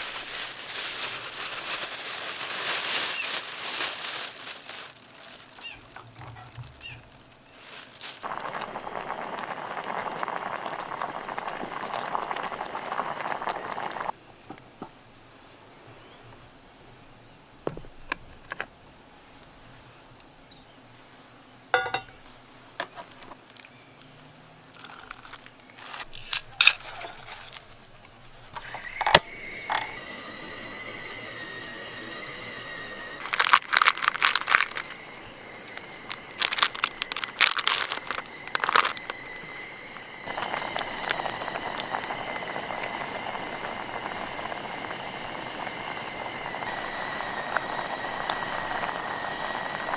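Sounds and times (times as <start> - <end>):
steady hiss: 0.0 - 5.9, 6.8 - 14.2, 28.3 - 49.9
clicks and crinkling: 0.0 - 14.1, 24.7 - 30.0, 33.2 - 49.9
bursts of crackling noise: 7.2 - 14.1, 33.2 - 49.9.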